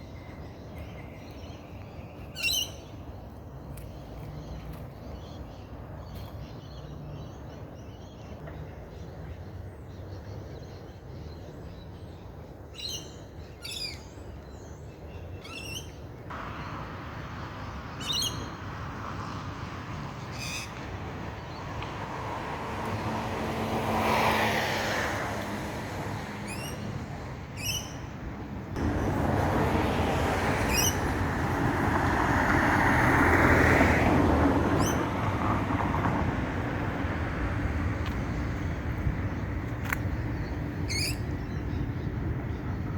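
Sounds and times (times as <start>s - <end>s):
road traffic rumble: 0.0s - 42.9s
vehicle passing: 16.3s - 42.9s.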